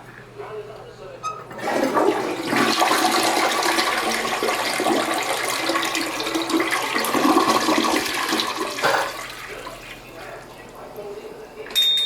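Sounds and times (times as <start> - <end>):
toilet flushing: 1.5 - 10.9.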